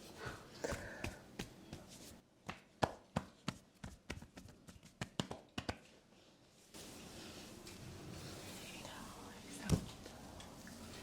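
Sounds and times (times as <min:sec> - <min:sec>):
hands slapping body in massage: 0:00.7 - 0:05.9.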